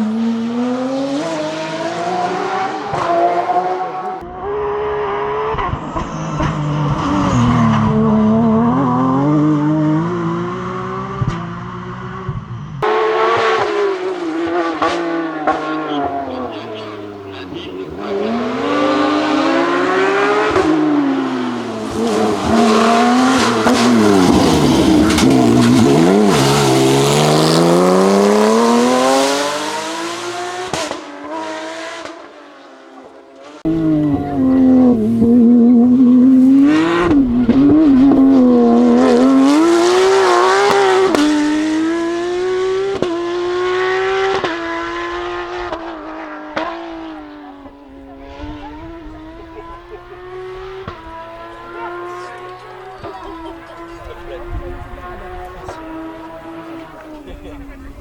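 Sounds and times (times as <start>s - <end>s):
car engine revving hard: 0.0s - 58.0s.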